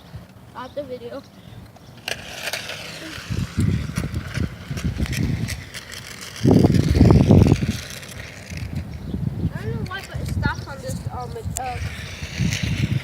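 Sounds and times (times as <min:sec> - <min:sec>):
small electric motor whining: 0:01.8 - 0:13.0
low rumbling on microphone: 0:06.4 - 0:13.0.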